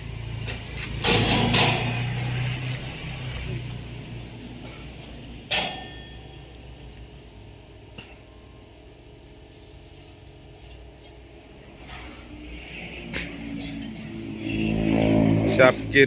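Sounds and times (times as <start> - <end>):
low workshop background: 0.0 - 16.0
sharp metallic clang: 1.0 - 2.3, 5.4 - 6.5.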